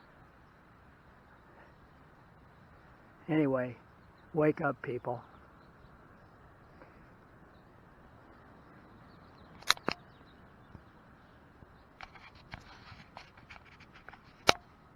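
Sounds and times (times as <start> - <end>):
light handling ticks and taps: 9.6 - 10.0, 12.0 - 14.7
sharp camera clicks: 9.6 - 10.0, 12.0 - 14.7.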